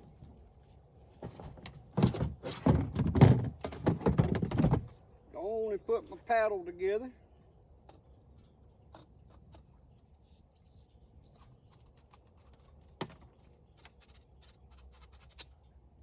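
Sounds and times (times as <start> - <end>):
high drone of insects: 0.0 - 16.0
paddle sections clicking and knocking: 1.2 - 4.9.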